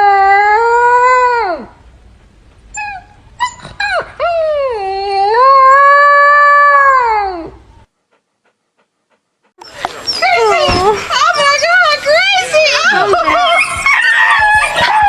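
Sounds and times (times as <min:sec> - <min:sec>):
dog yipping: 0:09.6 - 0:15.0
dog howling: 0:10.0 - 0:15.0.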